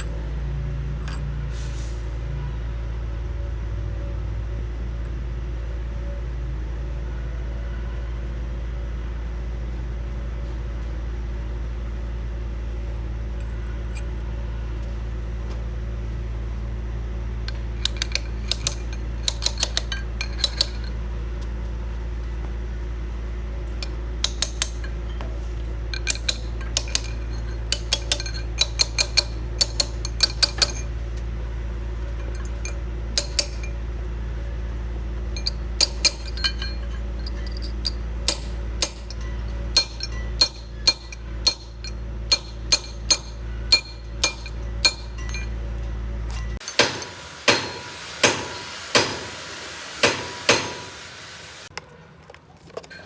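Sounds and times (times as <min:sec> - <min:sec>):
sharp metallic clinks: 0:00.0 - 0:00.3, 0:17.5 - 0:21.1, 0:23.7 - 0:31.2, 0:32.0 - 0:49.1.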